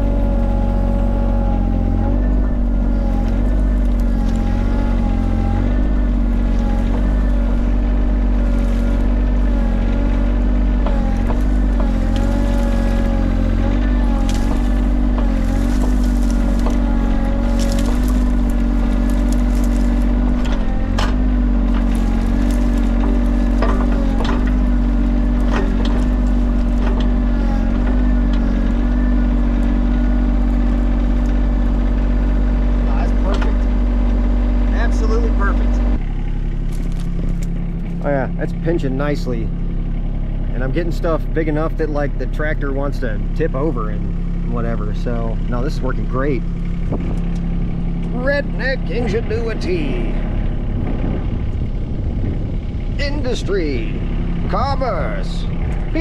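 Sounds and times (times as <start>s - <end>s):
excavator diesel engine running: 0.0s - 56.0s
sharp cracks of brush: 14.1s - 20.3s.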